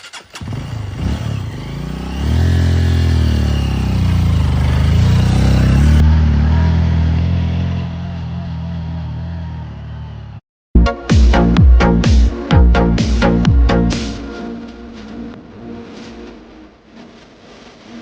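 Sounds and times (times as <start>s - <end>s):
motorcycle engine revving: 0.0s - 10.4s.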